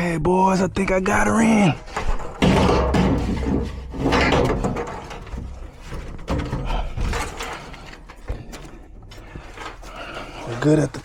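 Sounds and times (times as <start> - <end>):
metal clunking and scraping: 1.8 - 11.0.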